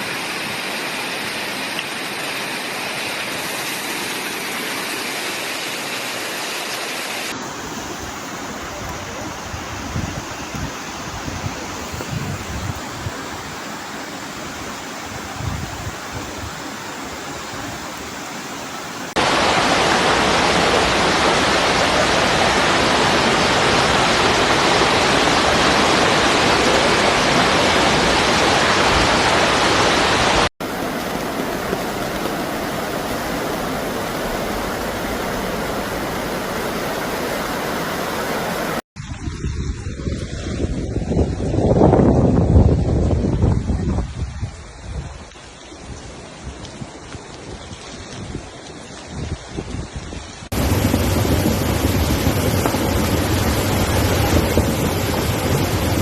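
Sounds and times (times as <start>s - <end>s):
heavy rain: 0.0s - 56.0s
running floodwater: 0.0s - 56.0s.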